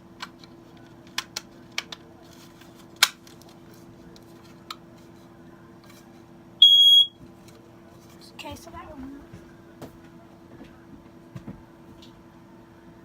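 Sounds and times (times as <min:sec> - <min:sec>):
steady low hum: 0:00.0 - 0:13.0
smoke detector beep: 0:06.6 - 0:07.2.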